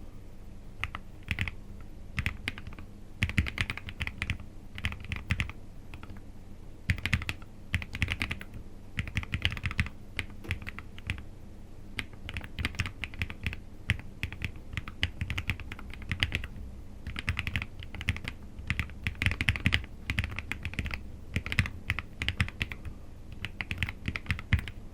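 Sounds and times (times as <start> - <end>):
mechanical keyboard typing: 0.8 - 1.6, 2.2 - 6.2, 6.9 - 11.2, 12.0 - 24.8.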